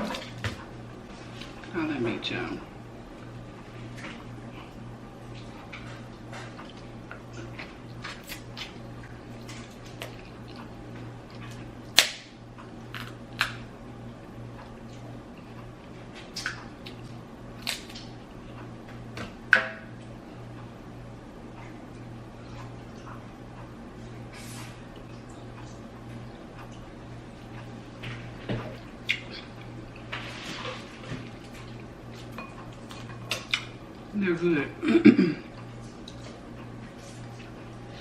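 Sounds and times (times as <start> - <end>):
low steady hum: 0.0 - 38.0
chewing and wet mouth smacks: 6.4 - 11.7, 28.6 - 30.1, 31.2 - 33.8
shell snaps and cracks: 11.9 - 12.3, 17.6 - 18.1.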